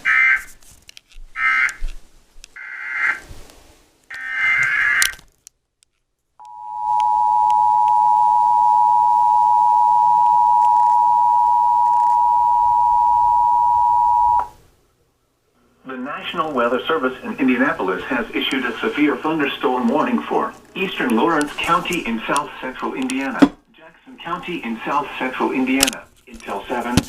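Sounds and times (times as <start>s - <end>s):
loud steady dual tone: 6.4s - 14.6s.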